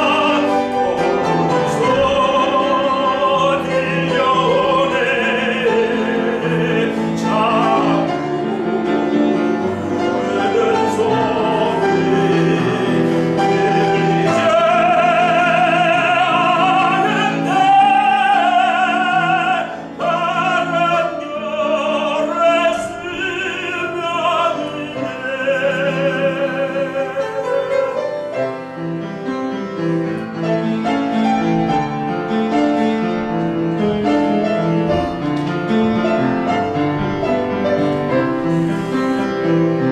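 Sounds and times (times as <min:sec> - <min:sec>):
tenor singing operatically: 0:00.0 - 0:28.3
piano accompaniment: 0:00.0 - 0:39.9.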